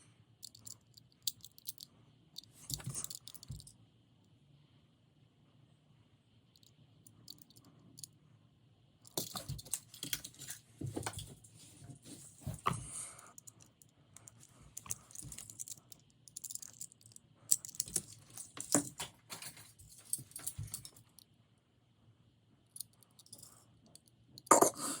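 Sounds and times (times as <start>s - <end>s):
toy cars clicking and rattling: 0.4s - 1.8s, 2.4s - 3.7s, 6.6s - 8.1s, 13.4s - 21.2s.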